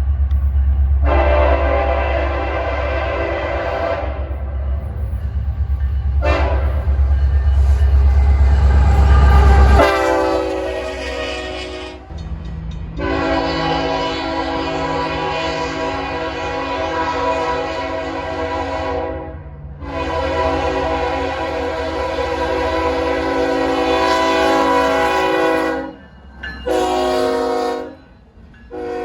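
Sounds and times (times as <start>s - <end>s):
passing train rumble: 0.0s - 29.0s
train horn blasts: 1.0s - 4.3s, 6.2s - 7.0s, 8.3s - 12.2s, 12.9s - 26.0s, 26.6s - 28.1s, 28.7s - 29.0s.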